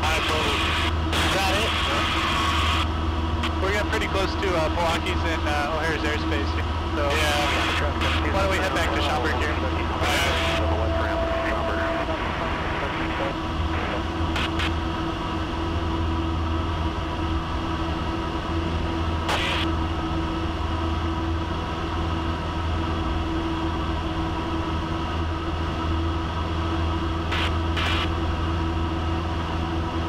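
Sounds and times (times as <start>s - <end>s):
airplane engine droning: 0.0s - 30.0s.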